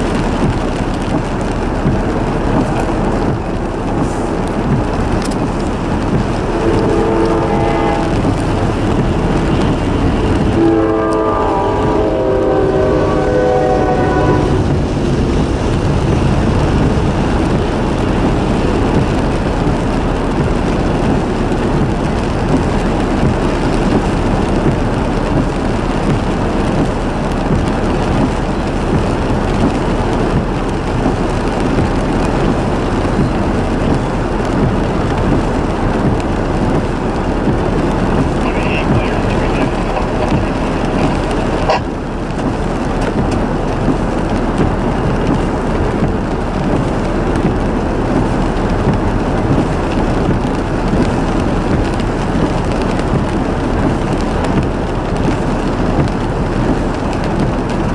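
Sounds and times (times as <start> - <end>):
train rumbling on rails: 0.0 - 57.9
locomotive air horn chord: 6.5 - 8.2, 10.6 - 14.7, 41.5 - 41.8.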